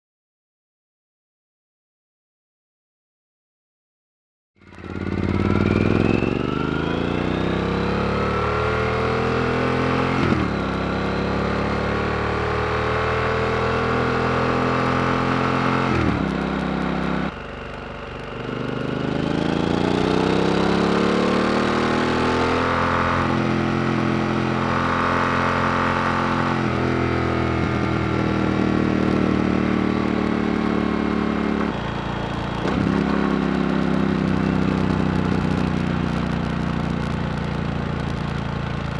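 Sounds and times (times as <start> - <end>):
motorcycle accelerating through gears: 4.6 - 38.9.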